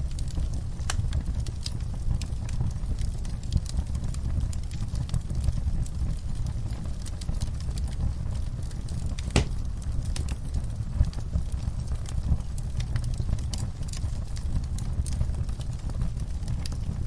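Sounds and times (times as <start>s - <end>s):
fire crackles and pops: 0.0s - 17.0s
low rumble of flames: 0.0s - 17.0s.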